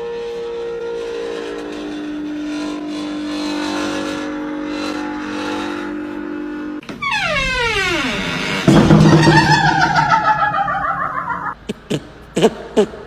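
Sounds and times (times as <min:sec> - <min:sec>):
descending whistle glide: 0:08.8 - 0:11.6.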